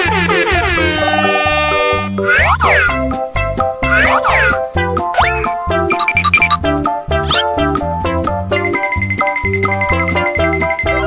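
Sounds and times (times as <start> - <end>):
bouncy children's music: 0.1 - 11.0
cartoon sweeping effect: 3.8 - 4.6, 5.2 - 6.6.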